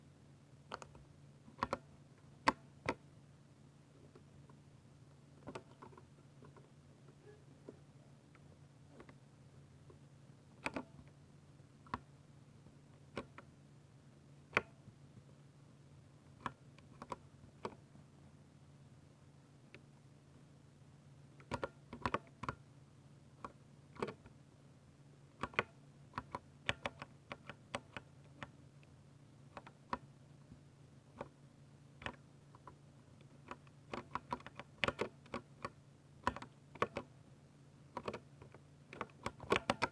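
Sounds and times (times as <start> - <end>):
faint steady hum: 0.0 - 39.9
mechanical keyboard typing: 1.6 - 1.8, 21.4 - 22.6, 25.4 - 28.5, 33.5 - 37.1, 37.9 - 39.9.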